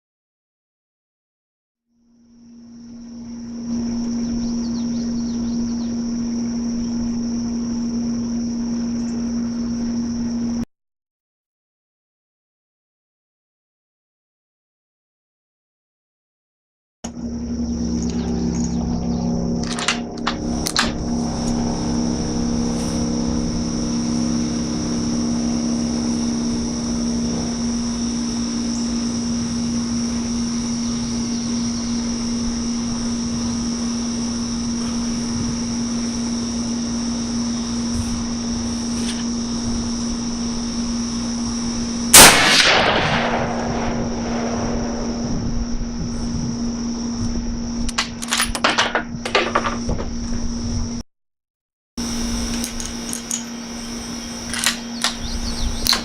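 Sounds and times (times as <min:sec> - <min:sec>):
low hum: 0:02.3 - 0:10.7, 0:17.1 - 0:51.0, 0:52.0 - 0:56.0
high-pitched buzz: 0:02.4 - 0:10.7, 0:17.1 - 0:48.2, 0:52.0 - 0:56.0
rifle shot: 0:42.2 - 0:45.2.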